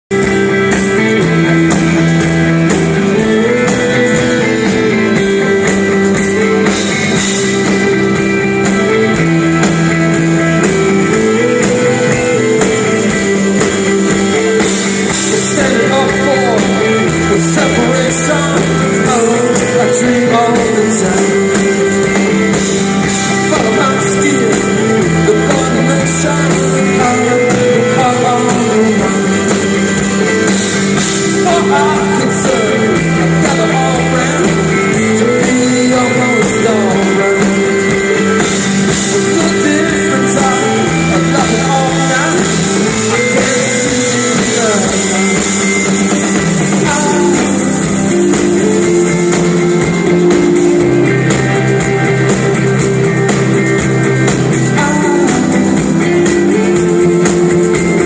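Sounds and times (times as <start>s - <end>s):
bass guitar: 0.0s - 58.0s
electric guitars: 0.0s - 58.0s
drum kit beat: 0.1s - 58.0s
person singing: 0.1s - 58.0s.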